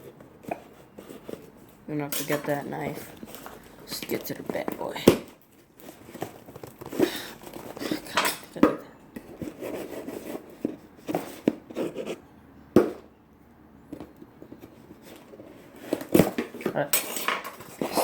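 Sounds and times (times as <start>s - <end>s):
knife scraping package: 5.8s - 8.2s, 14.7s - 18.0s.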